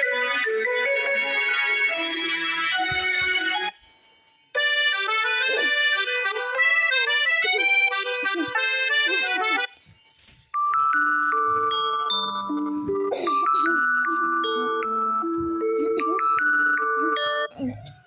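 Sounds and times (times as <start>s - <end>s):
chime-like ringtone tones: 0.0s - 17.6s
ringtone melody of quick notes: 10.6s - 17.5s.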